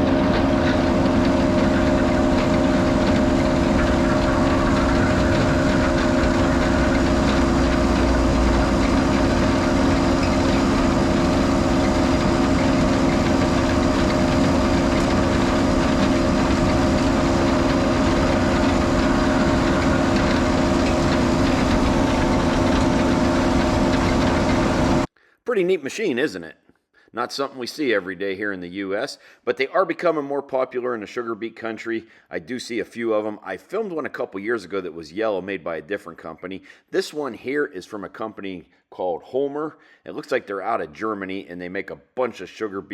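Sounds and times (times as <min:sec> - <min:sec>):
diesel engine running: 0:00.0 - 0:25.1.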